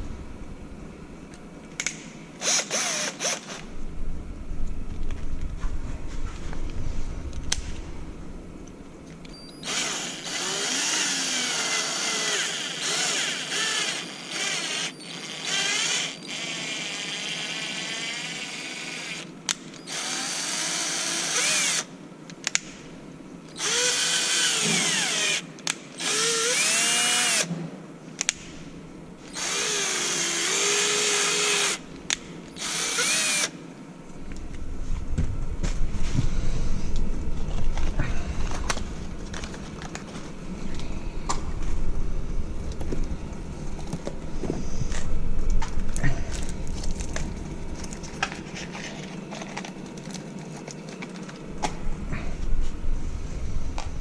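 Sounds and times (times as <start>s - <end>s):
power drill motor whine: 2.4s - 3.6s, 9.3s - 21.9s, 23.5s - 25.4s, 26.0s - 27.5s, 29.3s - 31.8s, 32.5s - 33.5s.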